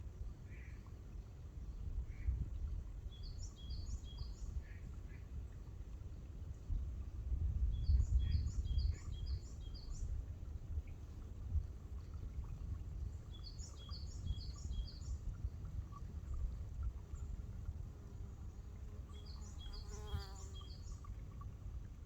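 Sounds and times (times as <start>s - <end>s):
small bird singing: 19.1s - 21.1s.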